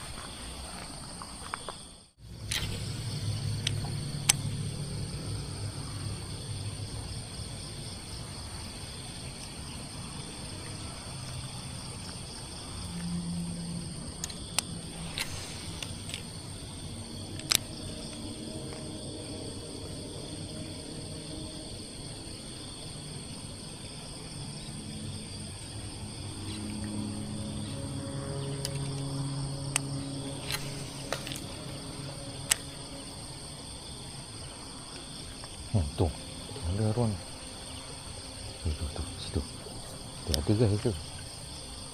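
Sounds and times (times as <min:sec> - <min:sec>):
insects chirring: 0:00.0 - 0:41.9.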